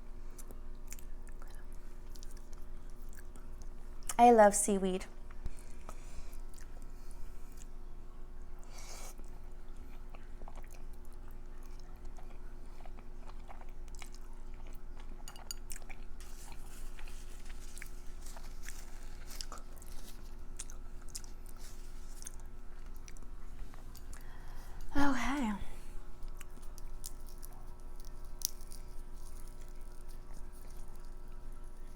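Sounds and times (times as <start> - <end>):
person chewing food: 0.2 - 4.2, 5.3 - 7.9, 8.5 - 24.9, 25.9 - 31.9
small clicks and crackles: 16.2 - 24.3, 26.3 - 31.9.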